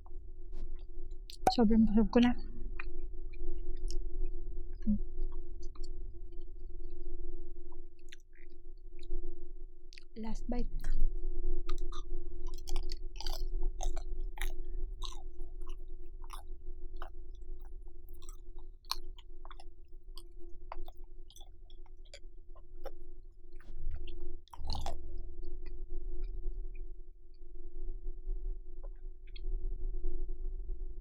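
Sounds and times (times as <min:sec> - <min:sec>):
steady low hum: 0:00.0 - 0:31.0
chewing with wet mouth smacks: 0:07.7 - 0:09.1, 0:09.9 - 0:10.2, 0:10.8 - 0:11.0, 0:11.7 - 0:25.0.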